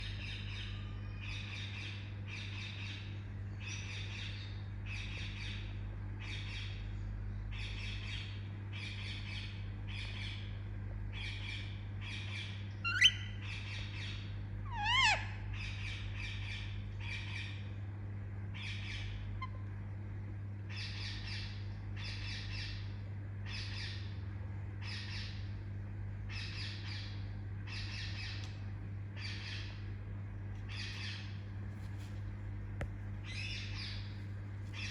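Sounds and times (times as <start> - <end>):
sharp parakeet calls: 11.1 - 17.6
parakeet chirping: 11.2 - 17.6.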